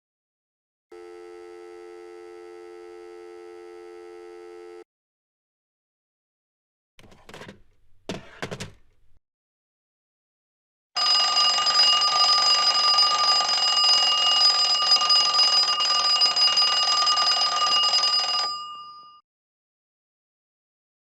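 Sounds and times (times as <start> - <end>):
telephone bell ringing: 11.0 - 19.2.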